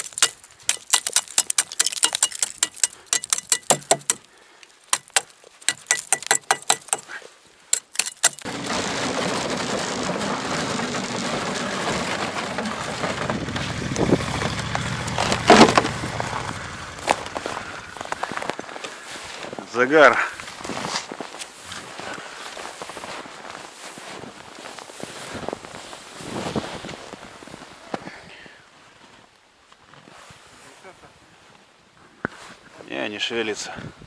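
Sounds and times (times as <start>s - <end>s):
loud scrape: 8.0s - 17.6s
footsteps crunching on snow: 8.4s - 27.9s.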